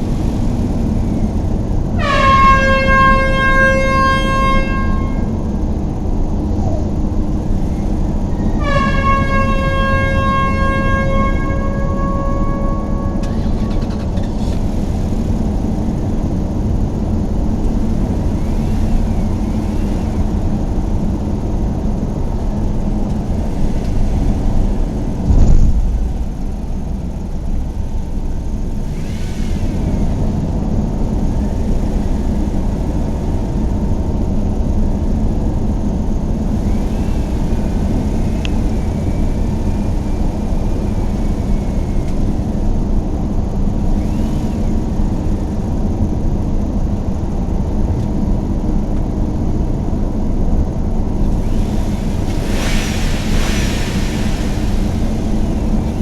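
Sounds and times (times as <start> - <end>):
vehicle engine rumbling: 0.0 - 56.0
loud thump: 25.2 - 27.1.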